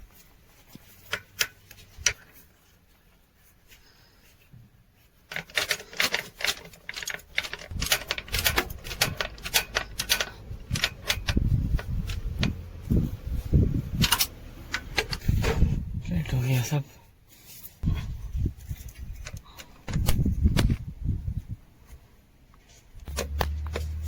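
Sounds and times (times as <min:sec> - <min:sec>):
hand tools clinking on metal: 0:05.4 - 0:12.6.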